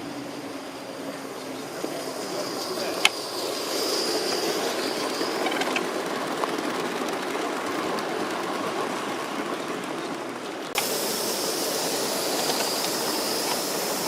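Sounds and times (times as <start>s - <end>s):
model train wheels rumbling on rails: 0.0s - 14.0s
clicks over rail joints: 5.2s - 8.1s.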